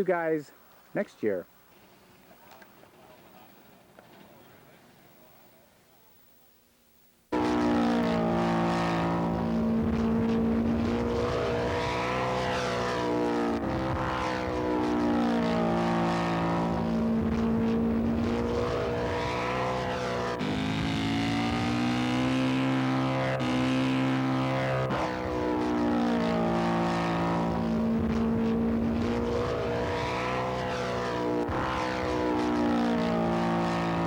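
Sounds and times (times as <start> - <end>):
model aircraft engines passing: 7.4 - 34.0.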